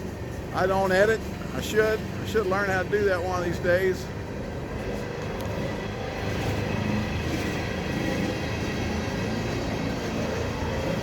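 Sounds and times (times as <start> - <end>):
train wheels on track: 0.0 - 11.0.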